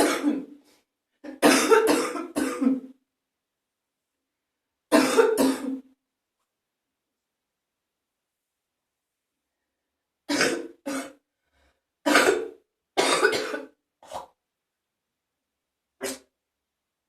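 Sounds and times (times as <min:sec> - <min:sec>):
person coughing up phlegm: 0:00.0 - 0:00.6, 0:01.2 - 0:03.0, 0:04.9 - 0:05.9, 0:10.3 - 0:11.2, 0:12.1 - 0:14.4, 0:16.0 - 0:16.3.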